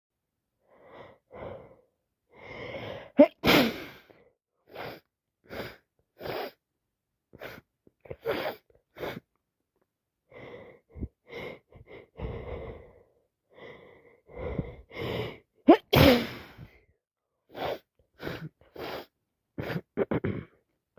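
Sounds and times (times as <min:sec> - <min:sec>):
woman sneezing: 0:03.2 - 0:04.0, 0:15.7 - 0:16.6.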